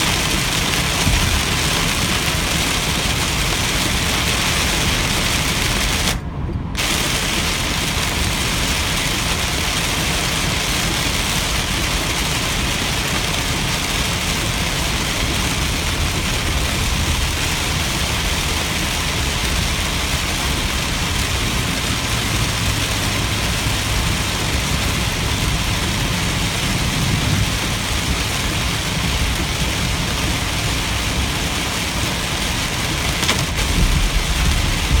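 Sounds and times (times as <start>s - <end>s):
engine and road noise: 0.0s - 35.0s
heavy rain on a car: 0.0s - 35.0s
low rumble: 33.4s - 35.0s.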